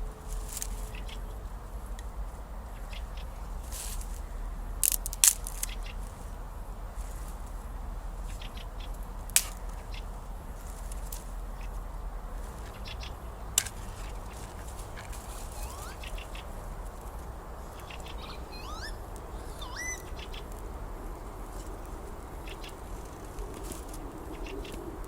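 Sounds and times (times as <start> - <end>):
bird chirping: 2.6 - 3.6, 8.2 - 9.0, 11.5 - 23.4
campfire crackling: 3.4 - 25.0.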